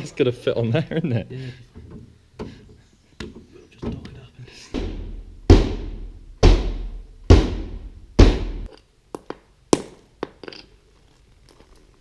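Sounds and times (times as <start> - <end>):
heavy blows on car body: 4.8 - 8.7.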